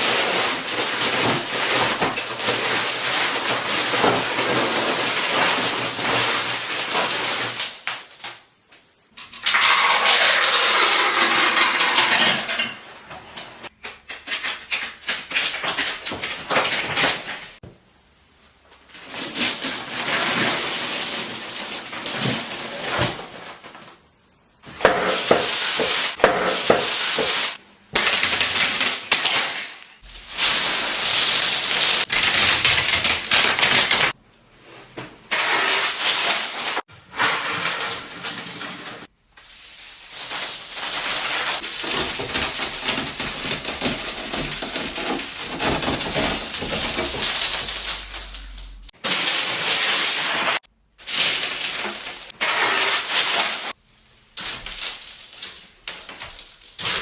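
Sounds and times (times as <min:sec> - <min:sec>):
brittle crackling and crunching: 0:00.0 - 0:08.4, 0:28.0 - 0:34.2, 0:39.4 - 0:50.3, 0:54.4 - 0:57.0.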